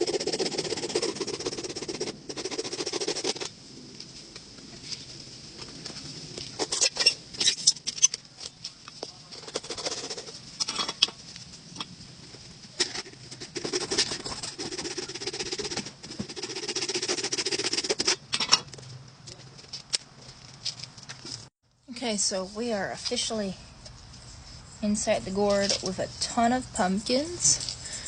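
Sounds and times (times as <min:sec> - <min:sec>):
saw rasping through gourd shell: 0:00.0 - 0:03.5, 0:12.8 - 0:18.2.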